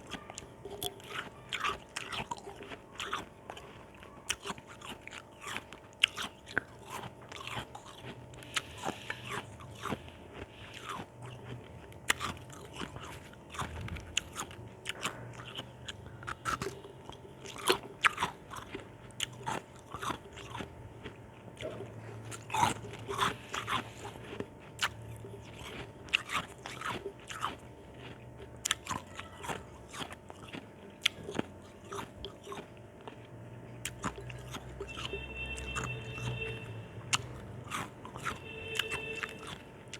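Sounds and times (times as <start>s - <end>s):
ice being bitten and chewed: 0.0s - 39.9s.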